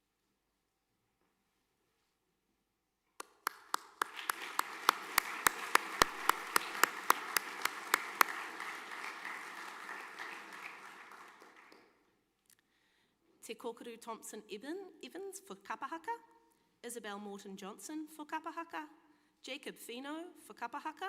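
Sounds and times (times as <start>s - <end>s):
audience applause: 3.2s - 11.9s
close hands clapping loudly: 3.2s - 12.0s.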